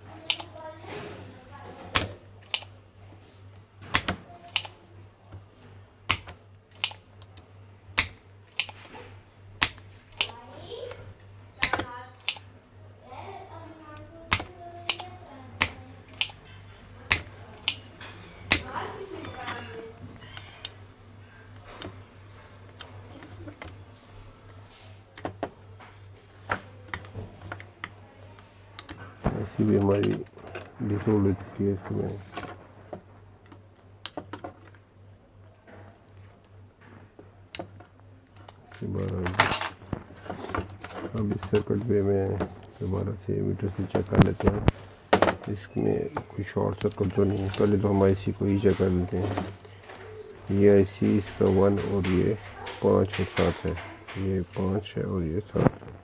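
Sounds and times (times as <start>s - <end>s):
low mains hum: 0.0s - 56.0s
desoldering clicks and taps: 0.2s - 0.7s, 3.5s - 8.9s, 9.6s - 12.5s, 13.9s - 17.9s, 18.5s - 18.8s, 28.8s - 29.0s, 32.4s - 34.8s
tool clicks and taps: 8.0s - 8.8s, 14.3s - 16.4s.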